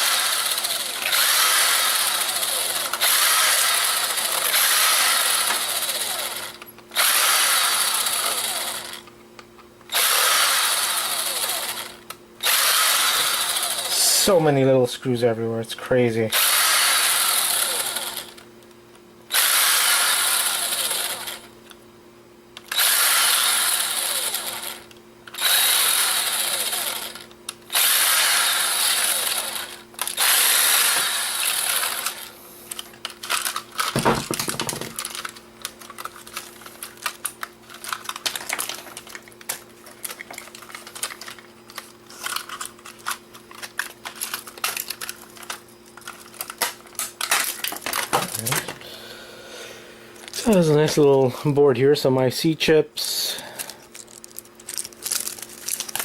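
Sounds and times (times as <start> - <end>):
power screwdriver running: 0.0 - 9.1, 9.9 - 14.1, 16.3 - 18.4, 19.3 - 21.5, 22.6 - 32.4, 33.3 - 35.3
screws and plastic parts rattling: 0.1 - 9.1, 29.1 - 48.8, 53.5 - 56.0.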